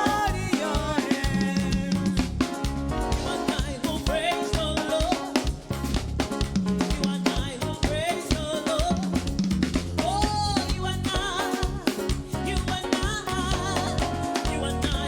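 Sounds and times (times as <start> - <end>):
worship music: 0.0 - 5.7
drum kit beat with rimshots: 0.0 - 15.0.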